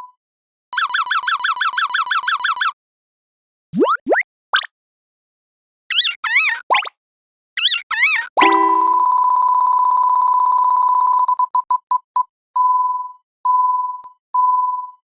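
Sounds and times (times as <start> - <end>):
electronic bell ringing: 8.4 - 9.4.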